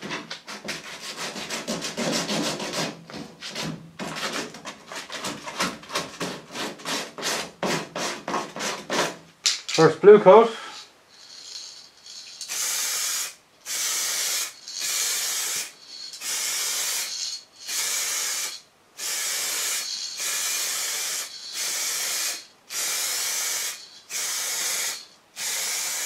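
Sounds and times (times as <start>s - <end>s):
aerosol spray can hissing: 11.2s - 26.0s.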